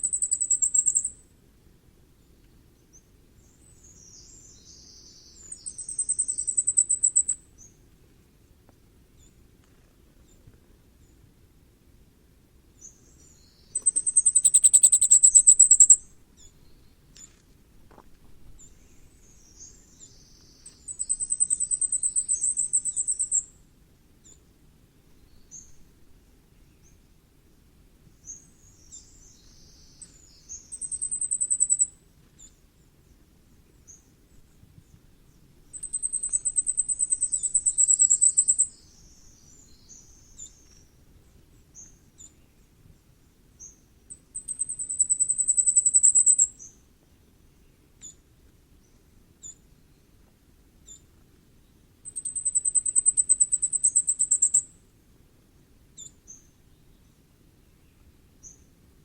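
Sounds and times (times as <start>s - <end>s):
faint high bird calls: 0.0s - 1.2s, 2.9s - 7.8s, 12.8s - 17.4s, 18.6s - 23.6s, 28.2s - 32.6s, 35.7s - 41.0s, 43.6s - 46.9s, 52.1s - 54.8s
high thin birdsong: 2.9s - 7.8s, 12.8s - 17.4s, 18.5s - 23.5s, 33.8s - 42.8s, 43.6s - 48.2s, 52.1s - 54.7s.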